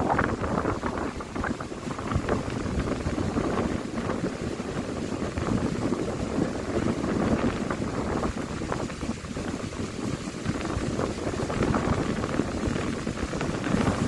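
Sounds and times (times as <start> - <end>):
sea surf washing: 0.0 - 14.0
wind buffeting microphone: 0.0 - 14.0.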